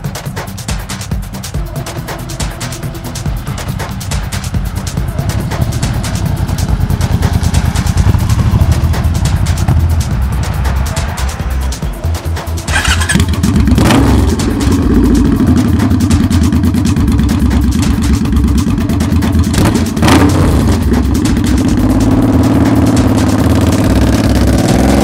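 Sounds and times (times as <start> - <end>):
motorcycle engine revving: 0.0 - 25.0.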